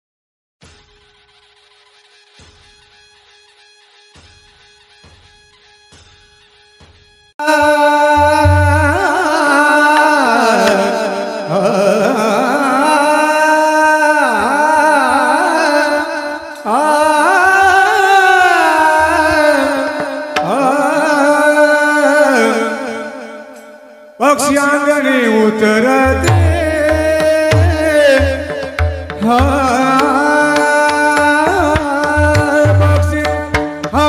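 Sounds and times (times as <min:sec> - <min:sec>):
instrumental accompaniment: 0:00.6 - 0:11.6, 0:18.0 - 0:21.5, 0:25.6 - 0:34.0
person singing ornamented notes: 0:07.4 - 0:34.0.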